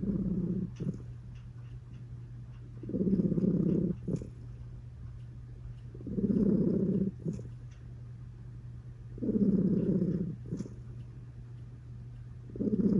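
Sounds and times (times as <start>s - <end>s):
cat purr-snoring: 0.0s - 1.1s, 2.8s - 4.4s, 5.9s - 7.5s, 9.2s - 10.8s, 12.5s - 12.9s.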